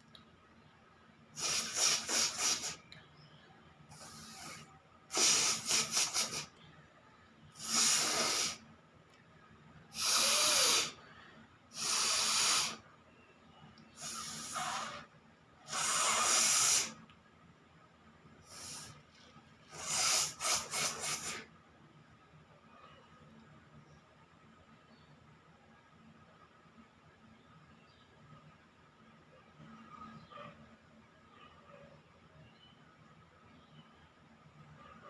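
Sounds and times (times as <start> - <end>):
person blowing nose: 1.4 - 2.8, 3.9 - 6.5, 7.6 - 8.6, 10.0 - 11.0, 11.7 - 12.8, 14.0 - 15.1, 15.7 - 17.0, 18.5 - 19.0, 19.7 - 21.5.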